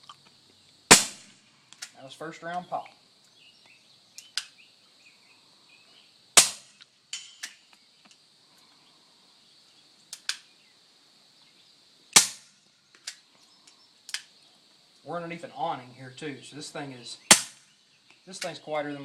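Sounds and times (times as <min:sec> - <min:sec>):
suppressed gunshots: 0:00.9 - 0:01.4, 0:06.4 - 0:06.7, 0:12.2 - 0:12.5, 0:17.3 - 0:17.6.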